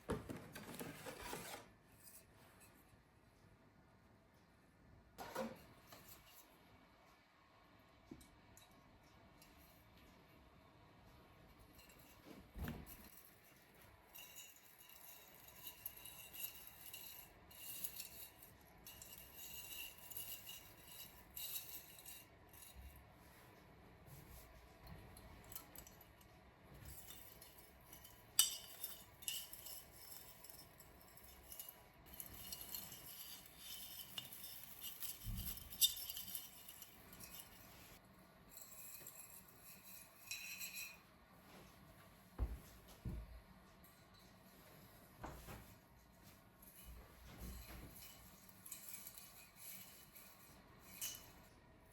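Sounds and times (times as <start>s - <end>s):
small objects clinking and crinkling: 26.8s - 41.0s.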